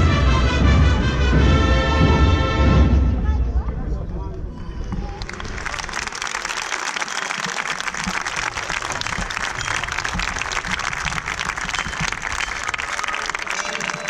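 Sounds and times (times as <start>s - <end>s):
crowd applauding: 4.6s - 14.0s.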